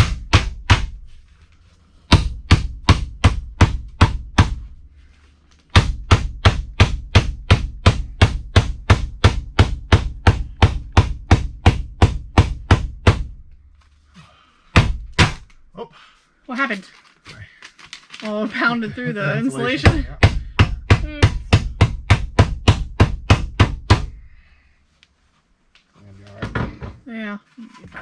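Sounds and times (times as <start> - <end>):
hammer driving nails into wood: 0.0 - 1.0, 14.8 - 15.6.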